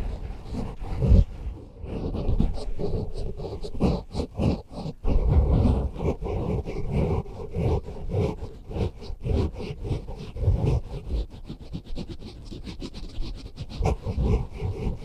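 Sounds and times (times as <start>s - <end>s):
microphone scratching and rubbing: 0.0s - 11.2s.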